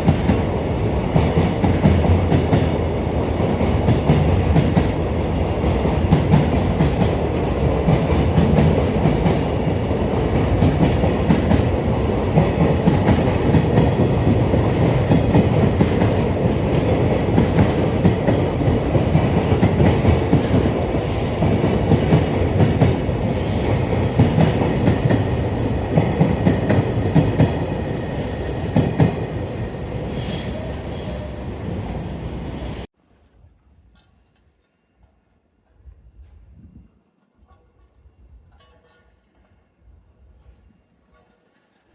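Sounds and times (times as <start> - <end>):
freight train rumbling: 0.0 - 32.9
wheels clicking over rail joints: 41.0 - 41.9.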